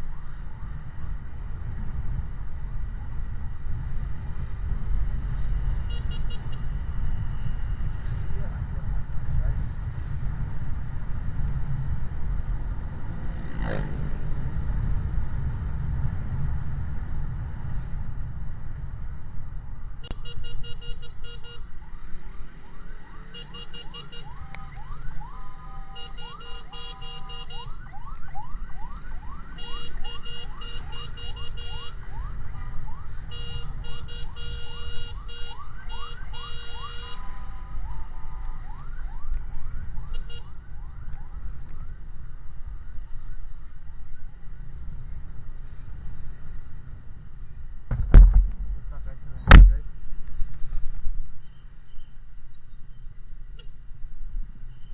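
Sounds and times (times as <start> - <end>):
wind and road noise: 0.0 - 54.9
emergency siren yelping: 21.6 - 42.0.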